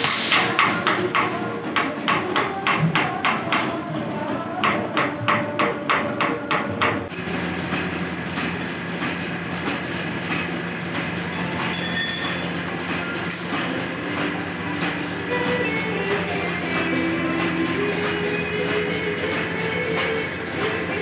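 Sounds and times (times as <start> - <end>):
mechanical hum with clatter: 0.0 - 21.0
hammer striking metal: 7.1 - 21.0.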